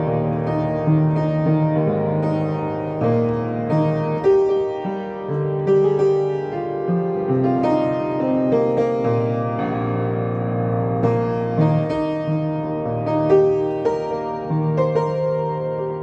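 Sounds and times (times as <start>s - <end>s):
slow piano piece: 0.0s - 16.0s.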